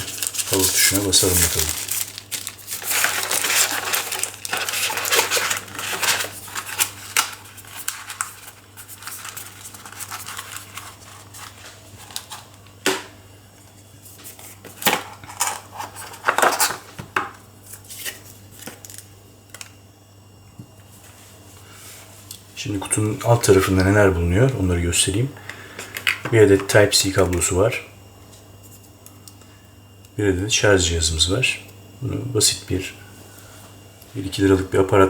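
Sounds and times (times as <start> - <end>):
packaging rustling and crinkling: 0.0 - 12.7, 14.2 - 17.0, 17.7 - 19.7
faint steady hum: 0.0 - 35.0.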